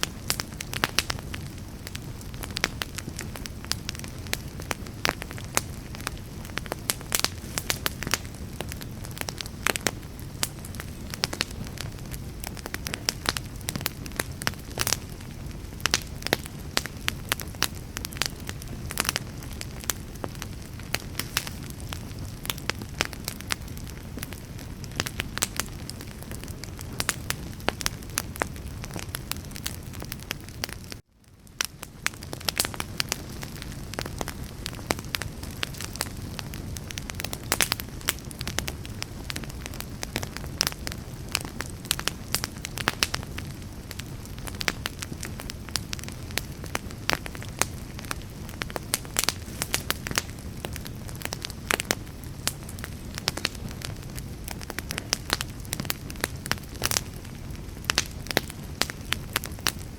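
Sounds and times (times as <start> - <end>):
campfire crackling and popping: 0.0 - 59.9.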